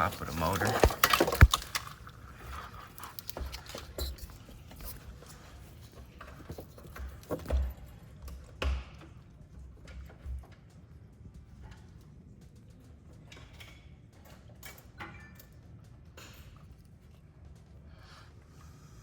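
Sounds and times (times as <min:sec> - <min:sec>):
plastic connectors clicking and knocking: 0:00.0 - 0:02.2.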